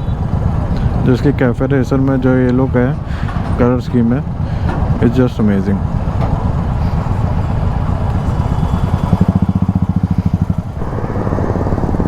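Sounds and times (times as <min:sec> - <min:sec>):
motorcycle engine running: 0:05.8 - 0:12.0.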